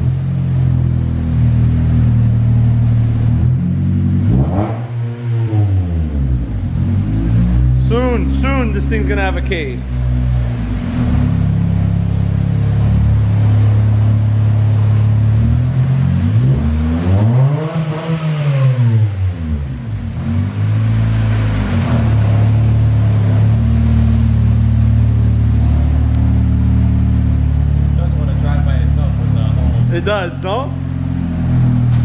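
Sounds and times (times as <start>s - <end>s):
car engine idling unevenly: 6.1s - 15.9s, 19.8s - 32.0s.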